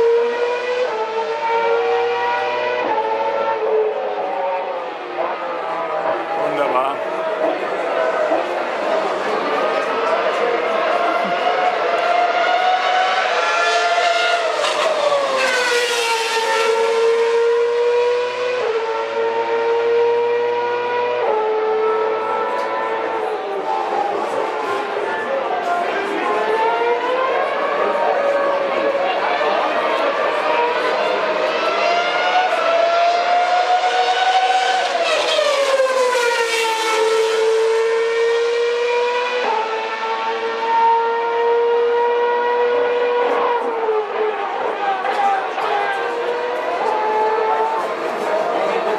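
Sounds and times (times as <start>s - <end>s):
racing car engines: 0.0s - 48.9s.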